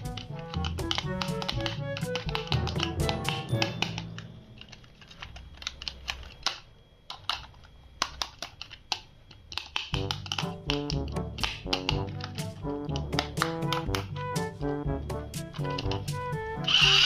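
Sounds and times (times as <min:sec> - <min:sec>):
music: 0:00.0 - 0:04.8, 0:09.9 - 0:17.0
sharp clicks and taps: 0:00.0 - 0:16.4
faint low hum: 0:00.0 - 0:17.0.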